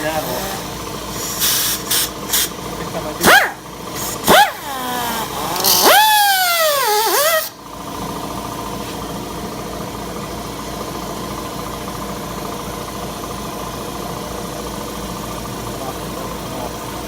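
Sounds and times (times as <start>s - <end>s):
rotary cutting tool whining: 0.0s - 7.6s.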